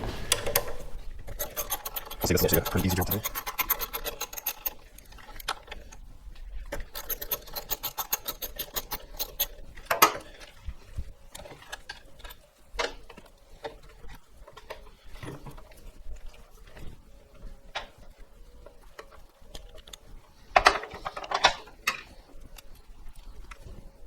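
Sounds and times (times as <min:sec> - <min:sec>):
toothbrush scrubbing metal: 0:01.4 - 0:04.6.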